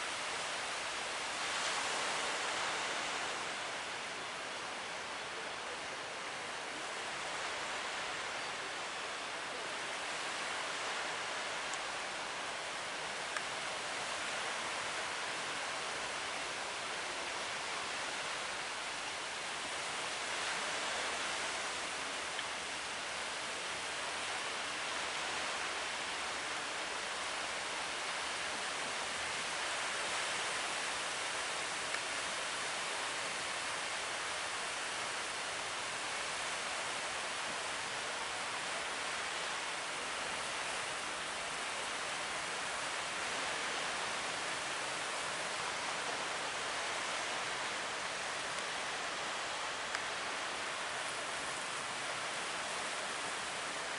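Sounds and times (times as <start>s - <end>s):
sea water around a boat: 0.0s - 53.9s.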